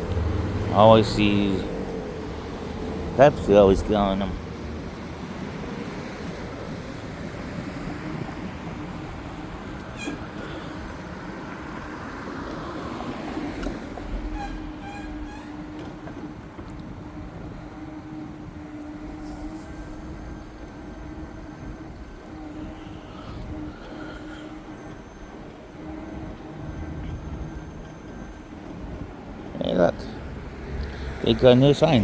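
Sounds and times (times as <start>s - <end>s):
tyre and engine drone: 0.0s - 32.0s
faint squeaks: 9.8s - 11.0s, 13.6s - 16.2s.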